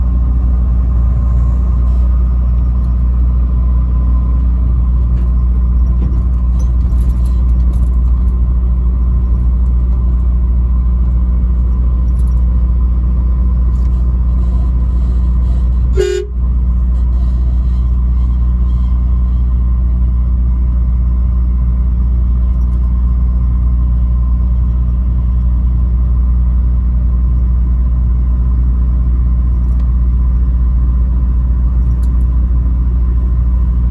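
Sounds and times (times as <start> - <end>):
vehicle road and engine rumble: 0.0 - 33.9
horn blast: 13.8 - 19.5.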